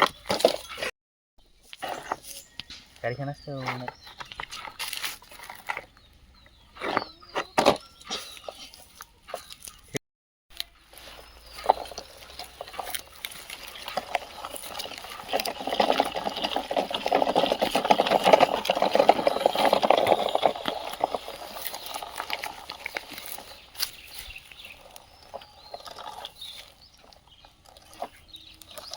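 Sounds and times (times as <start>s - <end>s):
small rocks pouring and clattering: 10.9s - 28.9s.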